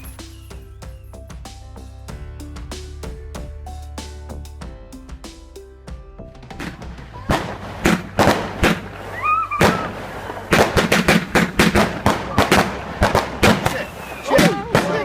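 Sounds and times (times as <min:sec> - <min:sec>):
fireworks bangs and crackles: 0:06.4 - 0:15.0.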